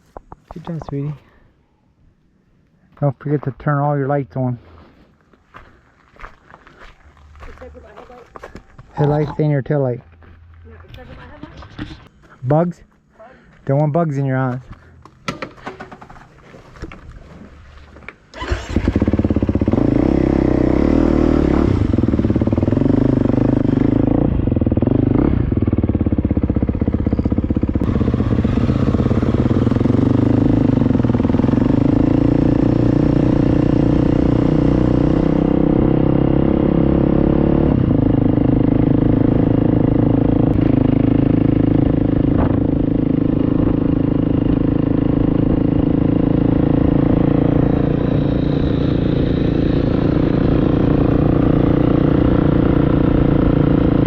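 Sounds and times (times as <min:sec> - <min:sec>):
motorcycle engine revving: 0:18.3 - 0:54.0.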